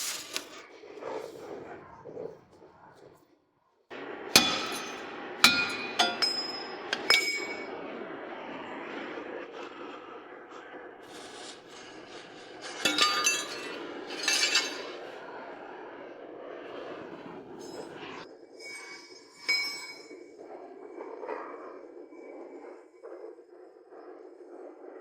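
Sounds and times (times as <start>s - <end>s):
steady background hum: 0.0s - 25.0s
steel parts clanking on metal: 4.4s - 7.7s, 12.6s - 15.0s.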